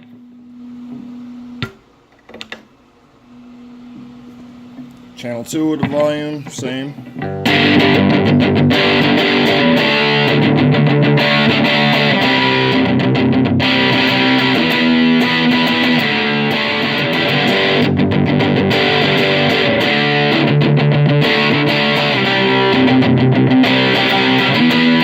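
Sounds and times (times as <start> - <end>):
electric guitar rhythm playing: 5.7 - 25.0.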